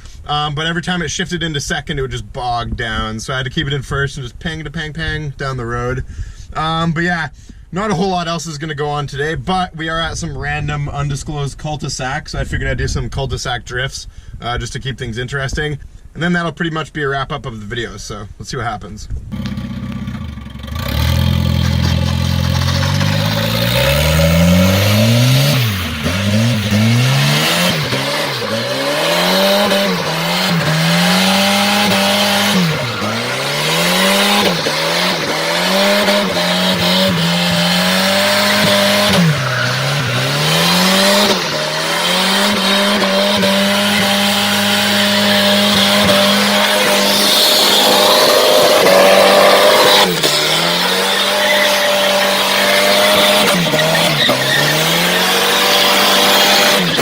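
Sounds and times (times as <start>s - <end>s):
car engine revving hard: 19.4s - 57.0s
tires squealing and sliding: 20.6s - 57.0s.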